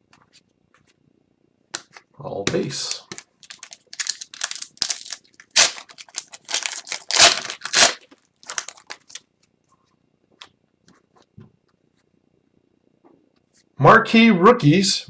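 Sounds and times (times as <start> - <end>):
foil wrapper tearing and crinkling: 2.8 - 9.2.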